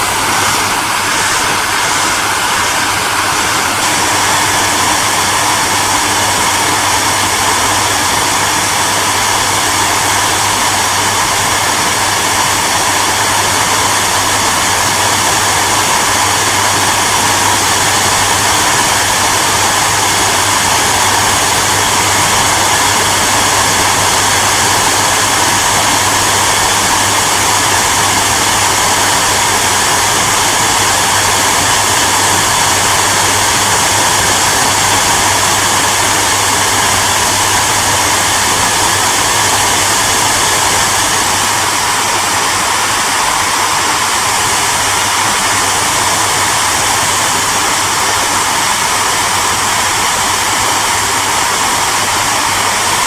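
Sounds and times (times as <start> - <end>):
hair dryer running: 0.0 - 53.0.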